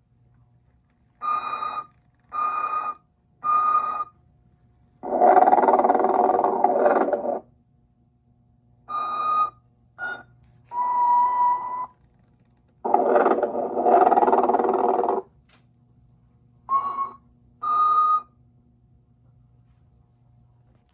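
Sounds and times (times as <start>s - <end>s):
faint steady hum: 0.0s - 20.9s
toy whistling: 1.2s - 4.2s, 8.9s - 12.0s, 16.7s - 18.4s.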